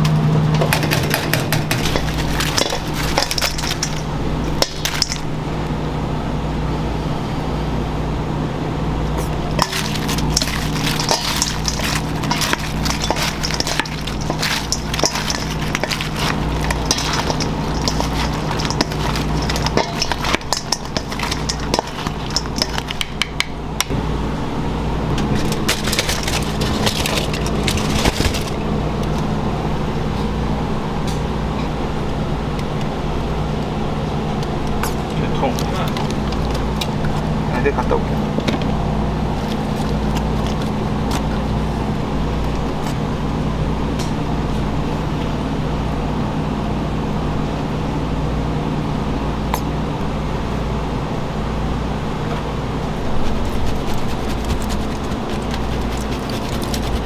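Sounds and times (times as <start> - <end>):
low machine hum: 0.0 - 57.0
metal and dishes clinking: 0.6 - 5.3, 9.5 - 23.5, 25.3 - 28.6.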